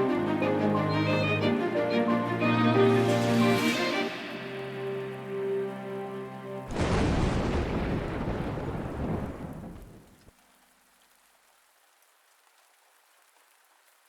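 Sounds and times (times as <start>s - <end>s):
faint steady rain: 0.0s - 14.0s
thunder clap rumbling: 6.7s - 10.2s.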